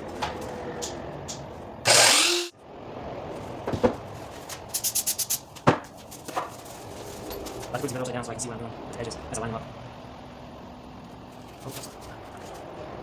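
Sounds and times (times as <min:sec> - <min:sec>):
quick run of clicks: 0:01.9 - 0:02.5.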